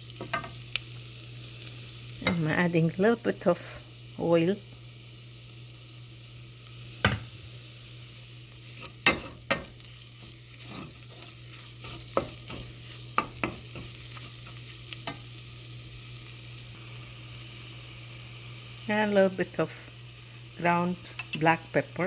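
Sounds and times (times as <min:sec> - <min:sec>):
spices sizzling in oil: 0:00.0 - 0:22.0
spoon knocking against pan: 0:07.0 - 0:07.3, 0:12.1 - 0:14.0.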